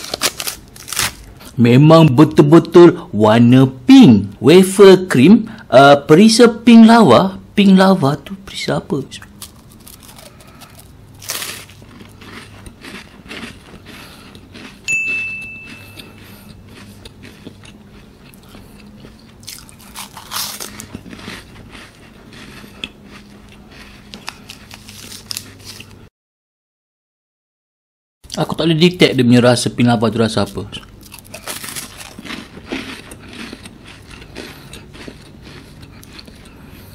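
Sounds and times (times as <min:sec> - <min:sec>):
crunching wafer bites: 0:00.0 - 0:01.6, 0:09.2 - 0:14.9, 0:15.7 - 0:26.0, 0:30.3 - 0:36.6.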